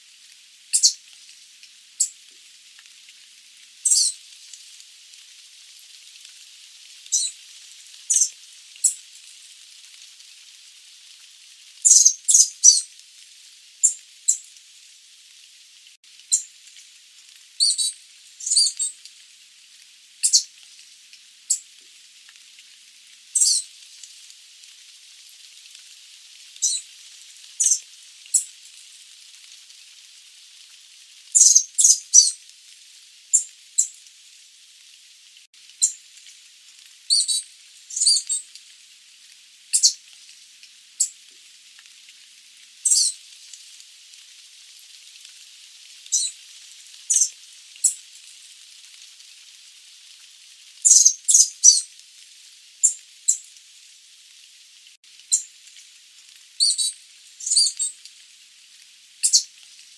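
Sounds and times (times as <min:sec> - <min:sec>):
steady hiss: 0:00.0 - 0:59.9
bird high-pitched calls: 0:00.8 - 0:01.0, 0:03.8 - 0:04.2, 0:07.1 - 0:07.4, 0:08.1 - 0:09.0, 0:11.9 - 0:12.9, 0:17.6 - 0:18.9, 0:20.2 - 0:20.5, 0:23.4 - 0:23.6, 0:26.6 - 0:26.8, 0:27.6 - 0:28.5, 0:31.4 - 0:32.4, 0:37.1 - 0:38.4, 0:39.8 - 0:40.0, 0:42.9 - 0:43.1, 0:46.1 - 0:46.3, 0:47.1 - 0:48.0, 0:50.9 - 0:51.8, 0:56.6 - 0:57.9, 0:59.2 - 0:59.5.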